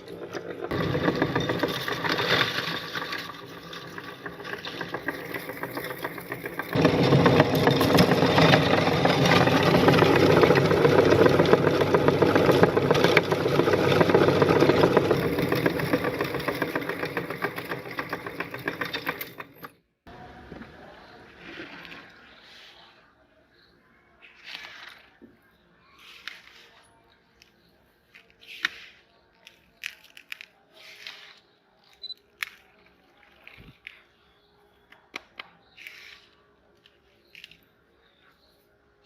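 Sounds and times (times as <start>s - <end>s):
meat grinder grinding hard candy: 0.0s - 19.6s.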